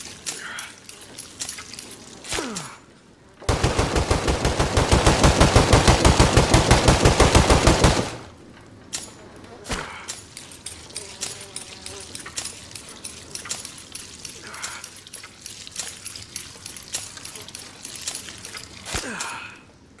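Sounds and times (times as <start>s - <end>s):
patter of small clicks and clinks: 0.0s - 2.3s, 10.0s - 19.4s.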